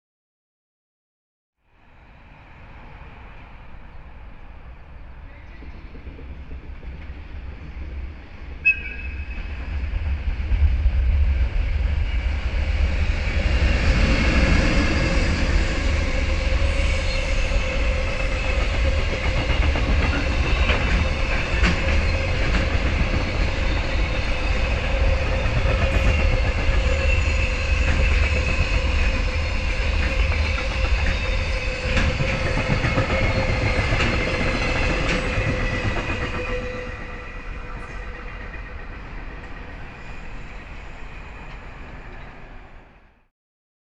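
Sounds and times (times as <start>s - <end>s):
train rumbling past: 1.7s - 43.3s
locomotive whistle toot: 8.6s - 9.6s.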